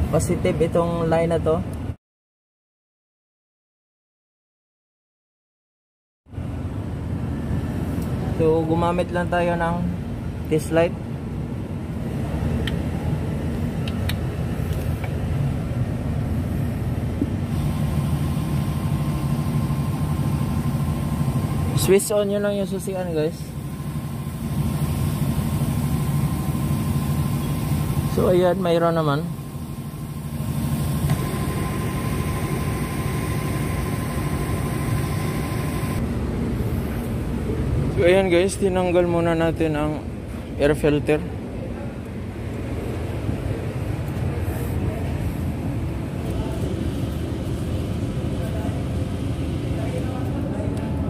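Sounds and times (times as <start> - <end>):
engine running with low rumble: 6.3 - 51.0
car engine idling: 17.5 - 36.0
faint high whine: 17.5 - 36.0.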